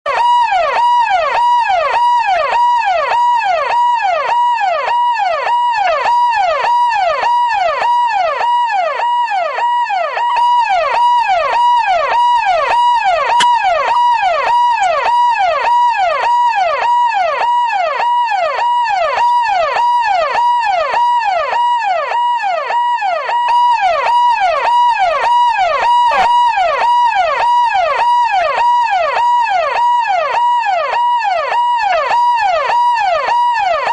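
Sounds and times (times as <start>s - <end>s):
siren in fast yelp: 0.1s - 33.9s.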